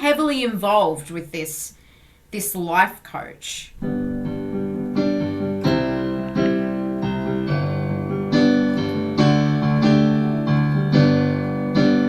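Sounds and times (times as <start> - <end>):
piano chords: 3.8 - 12.0.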